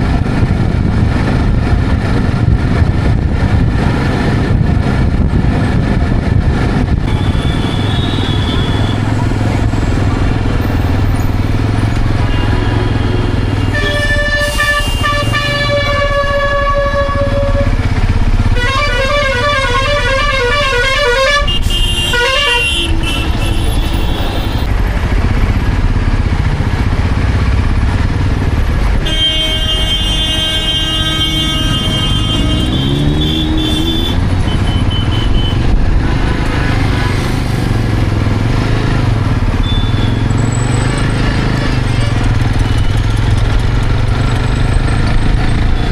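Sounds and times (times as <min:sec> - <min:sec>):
motorcycle engine running: 0:00.0 - 0:21.1, 0:22.8 - 0:45.9
long vehicle horn: 0:07.0 - 0:09.2, 0:12.2 - 0:24.7, 0:29.0 - 0:35.7, 0:39.6 - 0:40.3.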